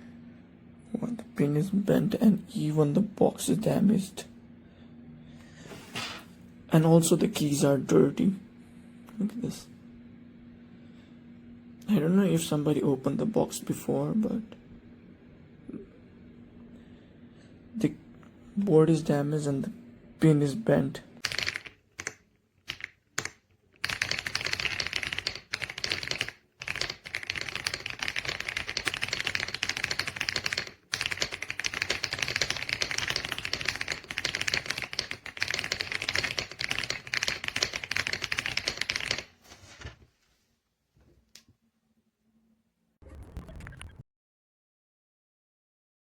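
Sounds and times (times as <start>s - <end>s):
mechanical keyboard typing: 21.2s - 39.3s.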